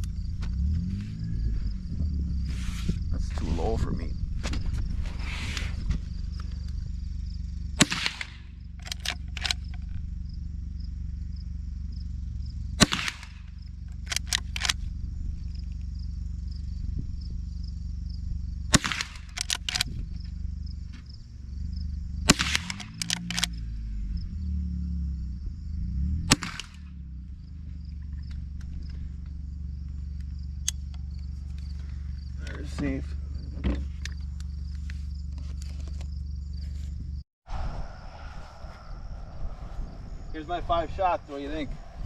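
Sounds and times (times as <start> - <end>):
low rumble: 0.0 - 32.5, 36.5 - 42.0
rifle shots: 7.8 - 9.8, 12.8 - 14.8, 18.7 - 19.8, 22.3 - 23.5, 26.3 - 26.8
rifle lever clicks: 8.2 - 9.8, 14.0 - 14.8, 18.9 - 19.9, 22.4 - 23.6.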